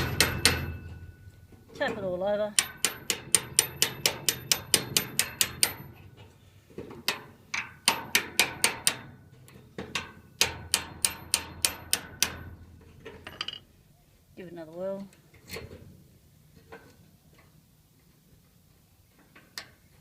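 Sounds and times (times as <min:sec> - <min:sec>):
hammer tapping on metal padlock: 0:00.0 - 0:01.0, 0:02.6 - 0:06.0, 0:07.5 - 0:09.1, 0:09.9 - 0:12.6.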